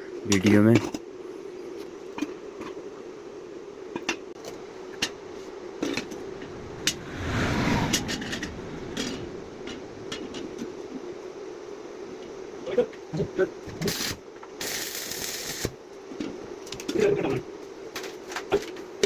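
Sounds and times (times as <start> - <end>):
rushing noise: 5.8 - 11.0.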